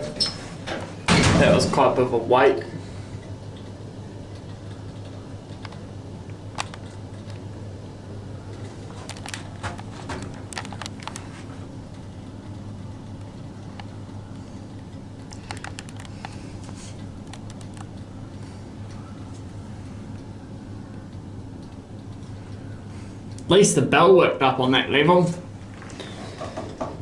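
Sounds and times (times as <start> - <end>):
lift humming: 0.0 - 27.0
light clicks and ticks: 3.2 - 7.5, 8.5 - 23.5.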